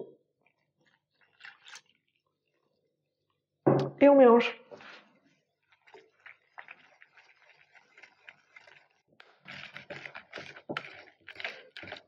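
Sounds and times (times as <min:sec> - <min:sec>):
utensil scraping batter bowl: 0:04.8 - 0:12.0.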